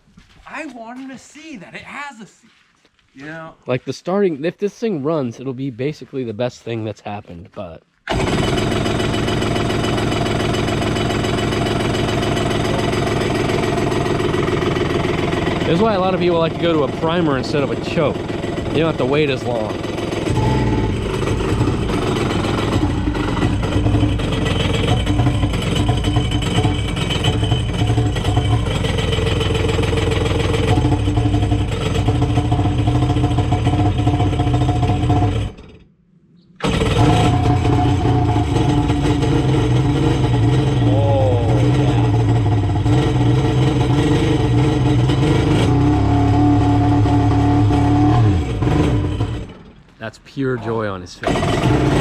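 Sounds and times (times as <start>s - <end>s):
jet ski engine idling unevenly: 8.1s - 35.8s, 36.6s - 45.7s, 51.2s - 52.0s
engine throttle blips: 8.1s - 52.0s.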